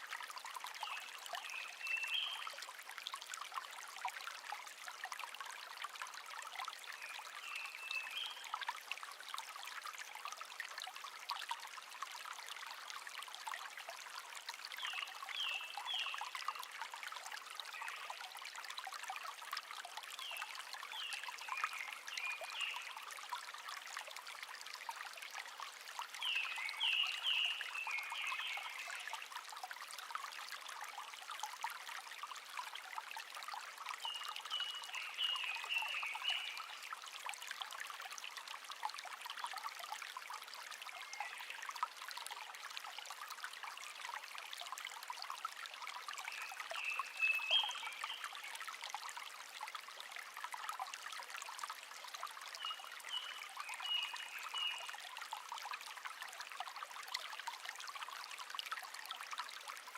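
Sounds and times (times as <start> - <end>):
stream trickling and babbling: 0.0 - 59.9
songbird singing: 26.2 - 29.0, 34.1 - 36.7, 46.4 - 48.3, 52.6 - 55.0.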